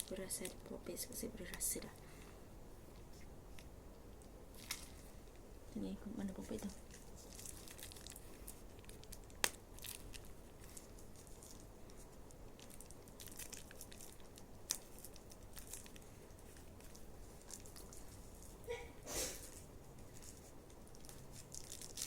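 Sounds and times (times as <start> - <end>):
plastic packaging crinkling and tearing: 4.5 - 5.4, 6.3 - 18.6, 19.3 - 22.0.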